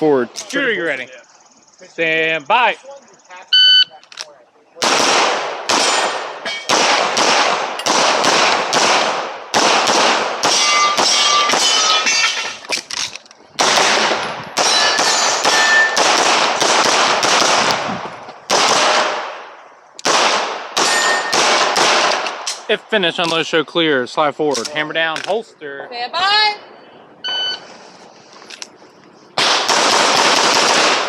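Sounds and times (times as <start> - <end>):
pistol shots echoing: 4.8 - 12.0, 13.6 - 17.8, 18.5 - 22.7, 29.4 - 31.0.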